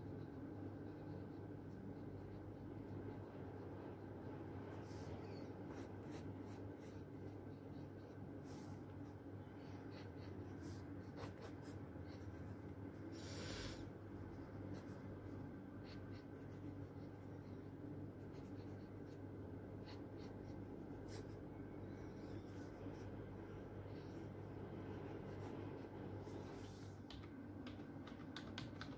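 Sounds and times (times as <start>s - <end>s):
low room hum: 0.0s - 28.9s.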